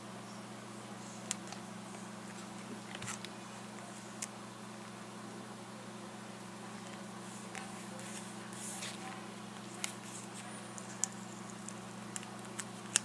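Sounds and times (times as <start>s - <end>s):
steady low hum: 0.0s - 13.0s
faint tape rustling: 1.2s - 5.0s, 6.7s - 13.0s.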